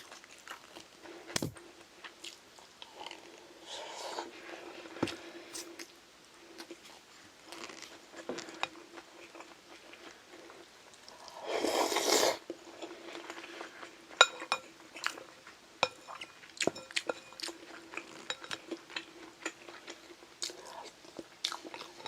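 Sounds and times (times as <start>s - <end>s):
faint steady hum: 0.0s - 22.0s
quiet chewing: 12.5s - 22.0s
utensils clinking on bowls: 14.2s - 18.8s.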